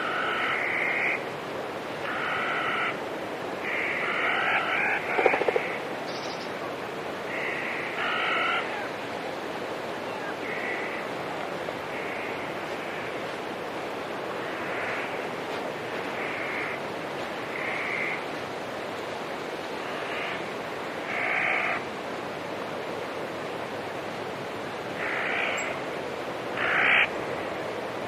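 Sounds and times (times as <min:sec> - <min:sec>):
rushing water: 0:00.0 - 0:28.0.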